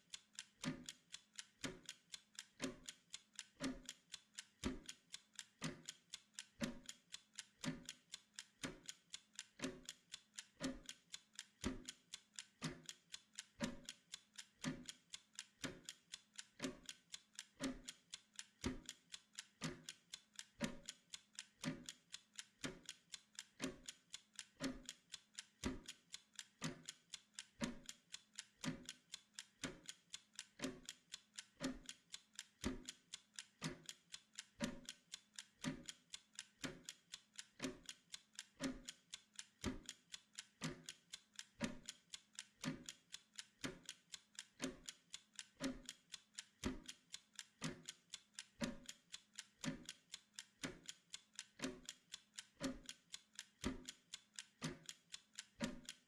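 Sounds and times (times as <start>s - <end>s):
timer ticking: 0.0s - 56.0s.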